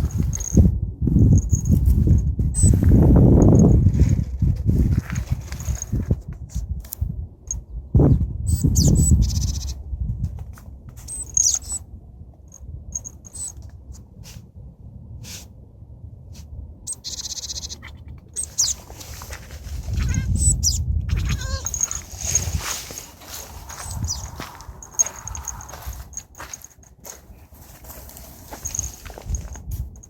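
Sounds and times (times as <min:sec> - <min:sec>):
cat chattering: 0:16.9 - 0:18.9, 0:19.9 - 0:22.4
low rumbling handling noise: 0:18.2 - 0:30.0.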